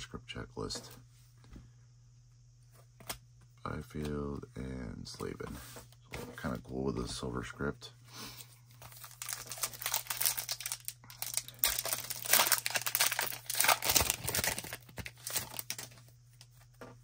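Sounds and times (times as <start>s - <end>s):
foil wrapper tearing and crinkling: 8.8s - 16.0s.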